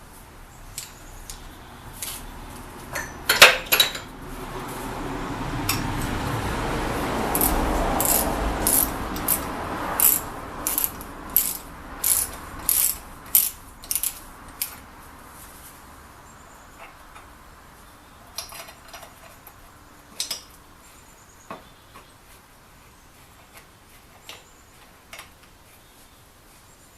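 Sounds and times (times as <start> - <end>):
metal tools clicking: 7.4 - 14.8
ratchet wrench clicking: 7.4 - 14.8.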